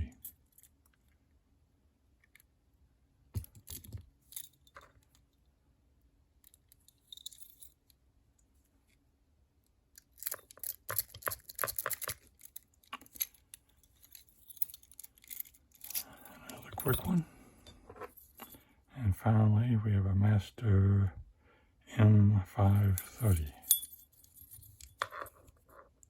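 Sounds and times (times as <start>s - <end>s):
lock pick clicking in padlock: 10.0s - 13.4s.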